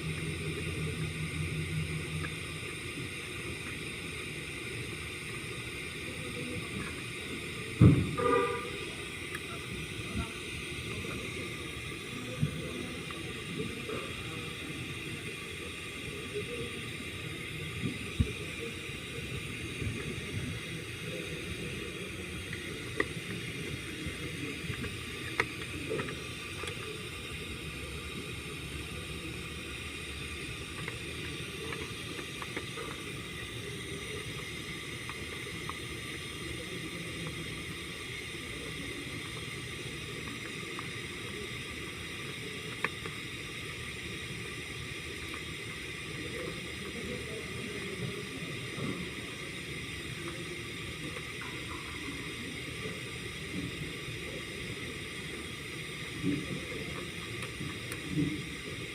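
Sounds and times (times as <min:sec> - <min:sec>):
engine running with hissing note: 0:00.0 - 0:58.9.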